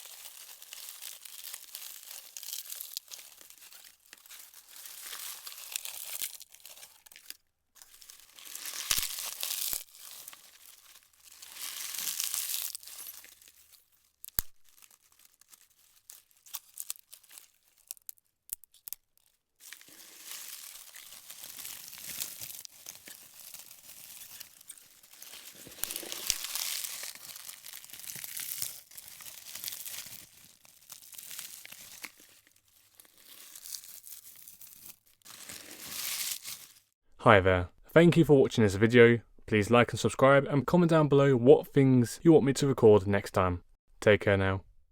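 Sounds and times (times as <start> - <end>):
dry leaves crunching: 0.0 - 37.0.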